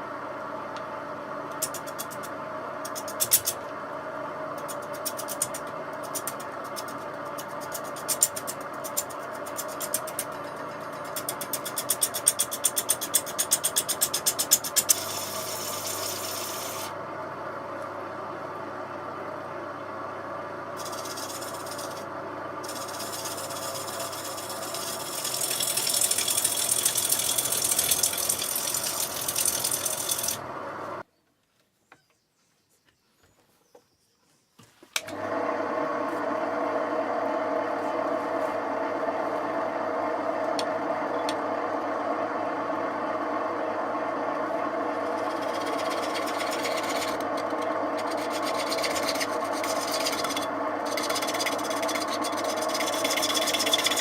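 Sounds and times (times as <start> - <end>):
wood lathe running: 4.7 - 17.0, 20.8 - 31.0, 35.0 - 54.0
gouge scraping wood: 20.8 - 22.0, 45.2 - 54.0.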